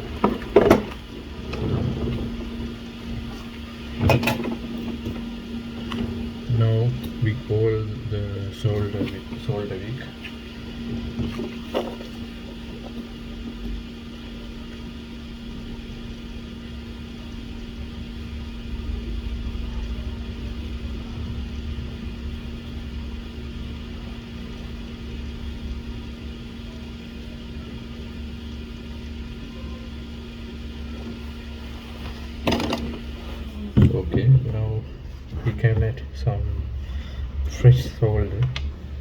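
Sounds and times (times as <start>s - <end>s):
steady low hum: 0.0s - 39.0s.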